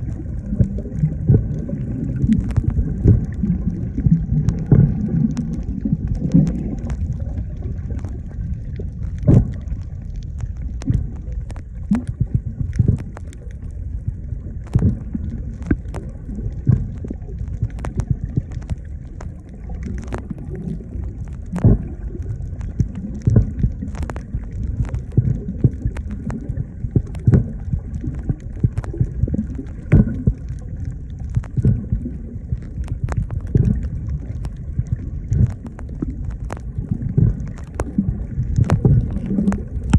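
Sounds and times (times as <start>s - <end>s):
clicks and pops: 0.0s - 39.9s
water rumbling: 0.0s - 39.9s.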